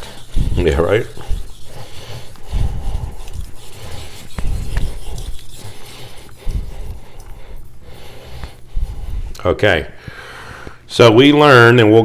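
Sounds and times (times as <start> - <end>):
knife scraping on whetstone: 0.0 - 7.8.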